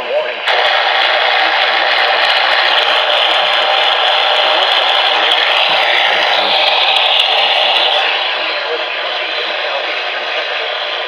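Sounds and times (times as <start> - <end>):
radio static hiss: 0.5 - 11.0.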